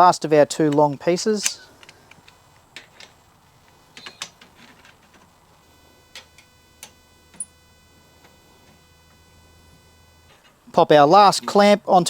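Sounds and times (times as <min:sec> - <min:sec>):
faint steady hum: 0:00.0 - 0:12.0
clamps clicking and knocking: 0:00.7 - 0:05.3.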